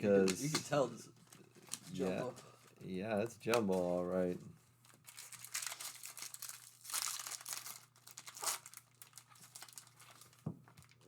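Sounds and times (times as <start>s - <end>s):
plastic wrapper crinkling and tearing: 0.2s - 2.8s, 3.4s - 11.0s.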